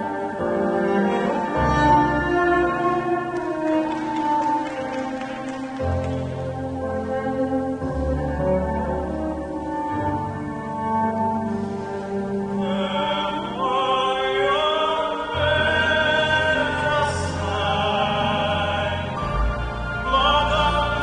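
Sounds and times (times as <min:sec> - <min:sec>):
classical music: 0:00.0 - 0:21.0
operatic singing: 0:12.2 - 0:21.0.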